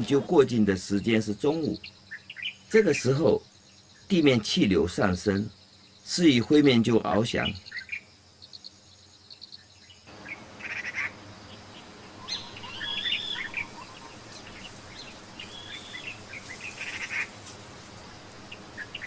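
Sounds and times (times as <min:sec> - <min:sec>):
birds chirping: 0:00.0 - 0:19.0
steady outdoor hiss: 0:00.0 - 0:19.0
birds whistled calls: 0:01.5 - 0:03.0, 0:07.4 - 0:17.4, 0:18.4 - 0:19.0.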